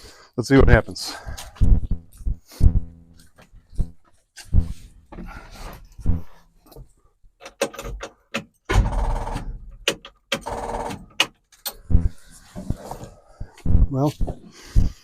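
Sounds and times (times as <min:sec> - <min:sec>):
starter cranking engine: 0:10.4 - 0:11.1.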